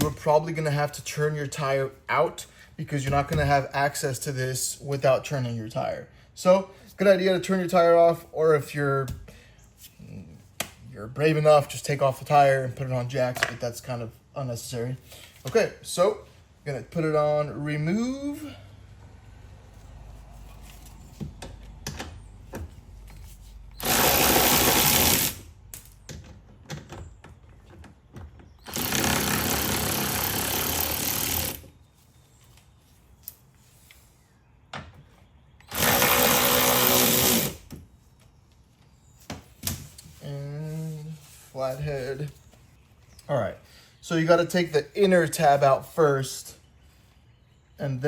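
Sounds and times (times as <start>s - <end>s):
power wrench running: 23.8s - 25.5s, 28.6s - 31.7s, 35.7s - 37.7s.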